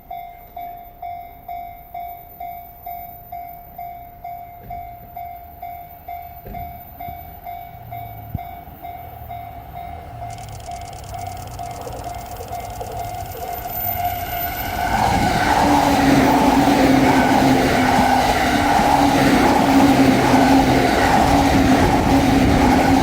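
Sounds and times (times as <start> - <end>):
level crossing alarm ringing: 0.0 - 23.0
electric train rumble: 0.2 - 23.0
train rushing past: 7.3 - 23.0.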